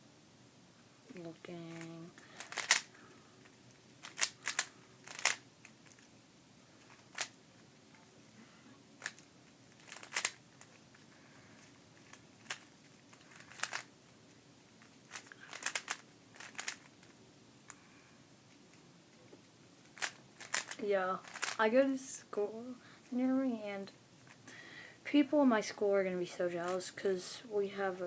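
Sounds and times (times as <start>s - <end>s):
puzzle cube clicking: 1.7s - 2.9s, 4.0s - 6.1s, 9.0s - 10.7s, 12.0s - 13.9s, 15.1s - 17.1s, 20.0s - 21.6s.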